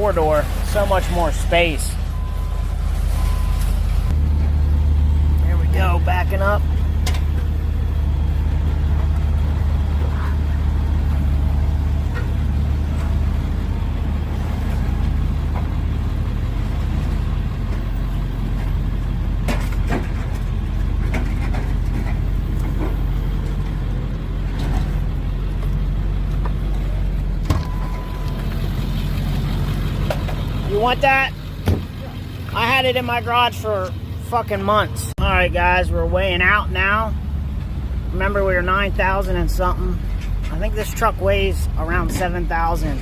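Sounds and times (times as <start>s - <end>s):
truck engine running at low speed: 0.0s - 43.0s
sharp knocks: 31.6s - 31.9s.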